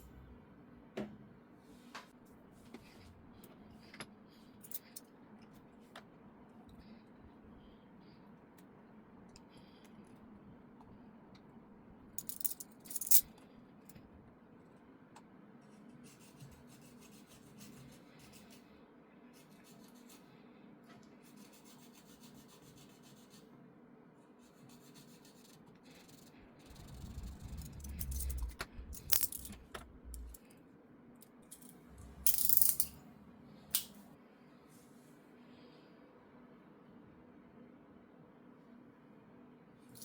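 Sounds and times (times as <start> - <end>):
small parts rattling: 12.2 - 13.3, 26.7 - 30.4, 31.5 - 33.0
rumble: 26.4 - 30.4, 31.8 - 33.4.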